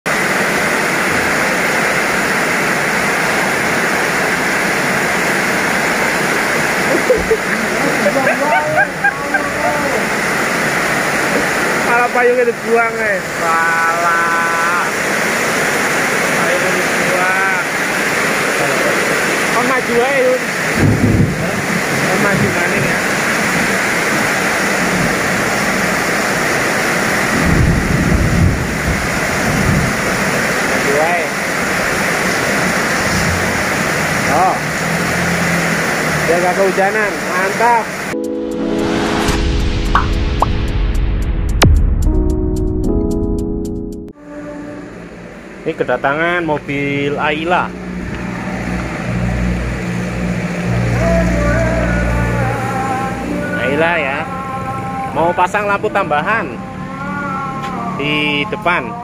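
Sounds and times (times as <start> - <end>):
heavy rain falling: 0.1 - 38.2, 44.8 - 59.0
low rumble: 38.6 - 44.1.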